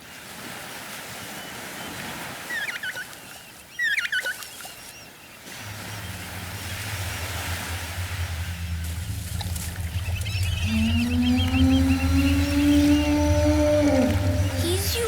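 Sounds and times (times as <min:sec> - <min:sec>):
sea sound: 0:05.5 - 0:15.0
low steady hum: 0:05.6 - 0:15.0.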